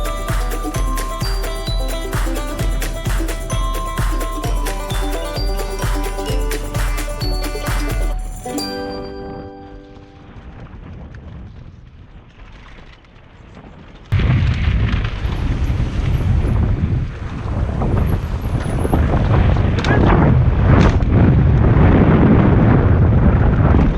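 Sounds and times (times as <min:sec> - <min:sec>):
low rumble from riding: 0:09.5 - 0:23.9
wind buffeting on microphone: 0:10.1 - 0:23.9.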